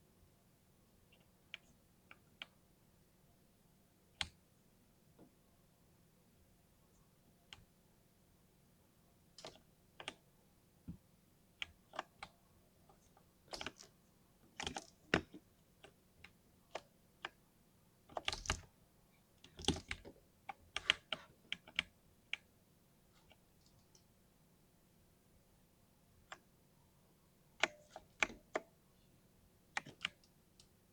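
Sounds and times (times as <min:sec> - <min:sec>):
mechanical keyboard typing: 0:19.6 - 0:20.0.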